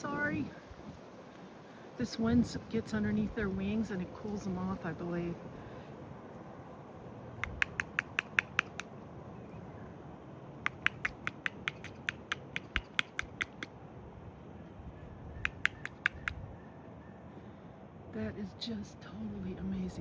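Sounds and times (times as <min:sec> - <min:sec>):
wind rumbling: 0:00.0 - 0:20.0
rapid mechanical clicking: 0:10.6 - 0:13.7.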